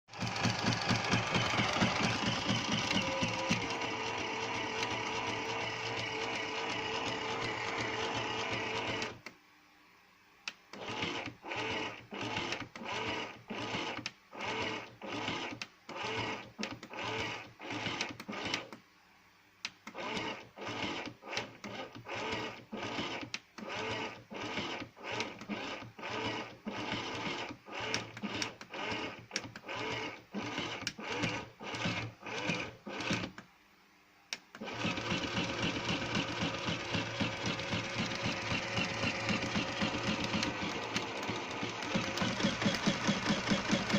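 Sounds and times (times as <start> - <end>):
small electric motor humming: 0.1 - 9.2, 34.6 - 43.9.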